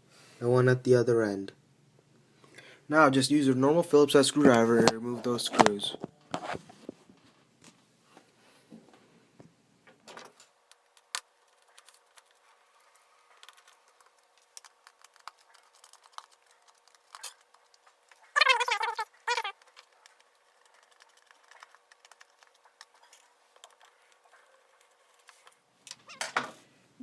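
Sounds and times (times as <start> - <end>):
pitched squeaks: 18.2 - 19.6.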